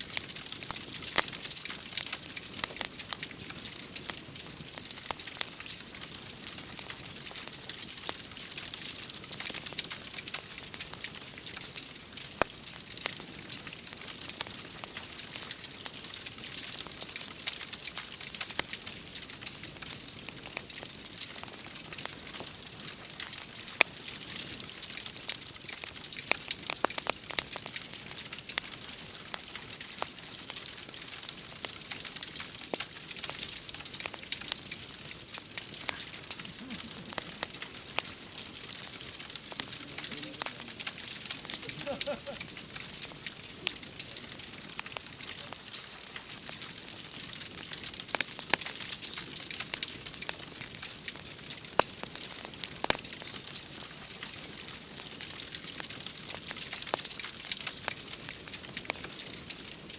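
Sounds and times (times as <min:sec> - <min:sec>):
wood fire crackling and popping: 0:00.0 - 0:59.9
rain hissing: 0:21.0 - 0:59.9.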